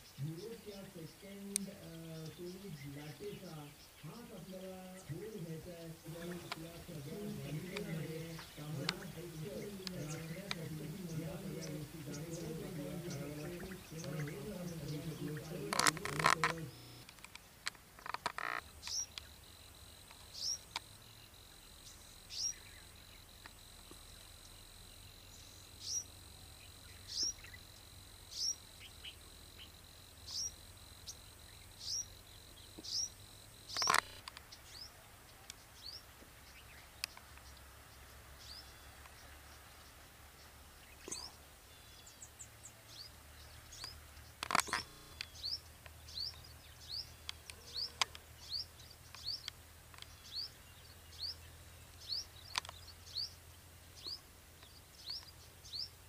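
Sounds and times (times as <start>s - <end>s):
birds chirping: 0.0s - 56.0s
sharp clicks: 6.1s - 19.3s, 33.7s - 34.5s, 43.8s - 46.4s.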